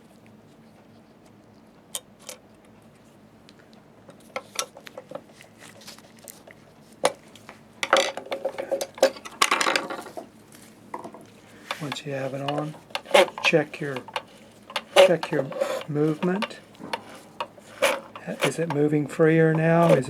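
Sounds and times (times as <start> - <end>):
small metal parts clinking and scraping: 7.8 - 10.2, 11.6 - 20.0.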